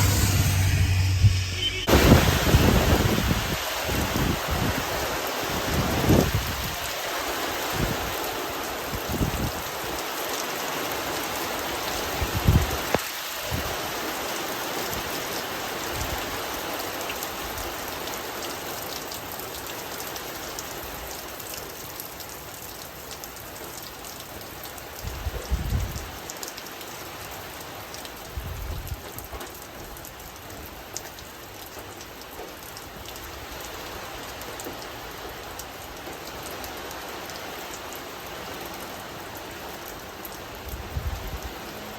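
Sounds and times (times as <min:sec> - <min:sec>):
low thumps: 0:00.0 - 0:02.9
steady rain falling: 0:01.9 - 0:41.9.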